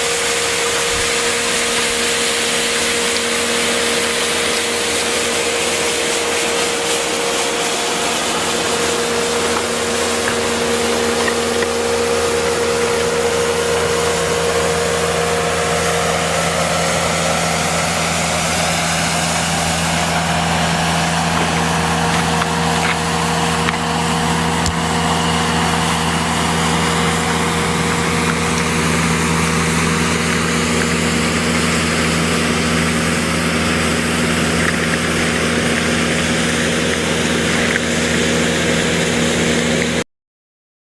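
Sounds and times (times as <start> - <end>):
diesel engine running: 1.5 - 40.0
rotary broom sweeping gravel: 2.3 - 13.1.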